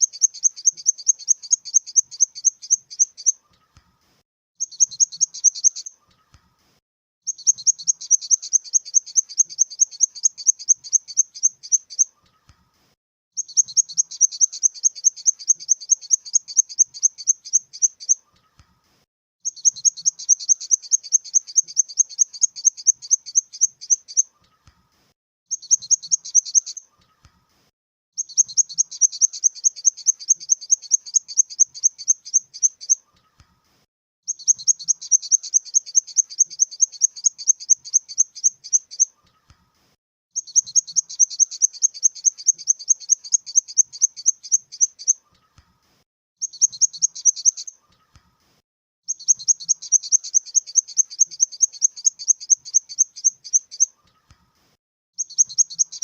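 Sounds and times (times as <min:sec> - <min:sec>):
grasshopper chirping: 0:07.3 - 0:12.0, 0:13.4 - 0:18.2, 0:19.5 - 0:24.2, 0:28.2 - 0:33.0, 0:34.3 - 0:39.0, 0:40.4 - 0:45.1, 0:49.1 - 0:53.9.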